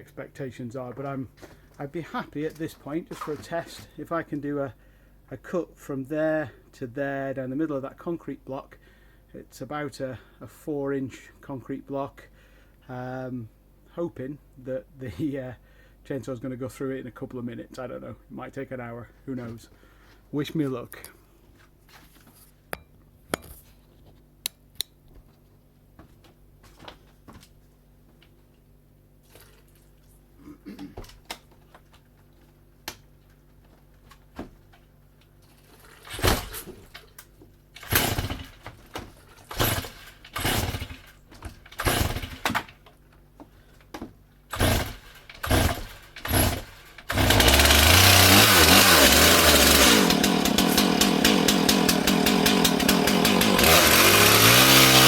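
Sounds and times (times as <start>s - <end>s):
chainsaw engine pull-starting: 35.4s - 42.8s, 44.5s - 55.0s
chainsaw engine running: 35.7s - 37.0s, 37.8s - 38.6s, 39.4s - 42.6s, 44.5s - 55.0s.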